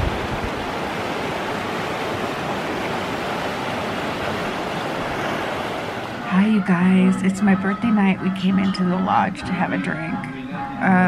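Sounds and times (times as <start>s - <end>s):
river water rushing: 0.0s - 7.0s.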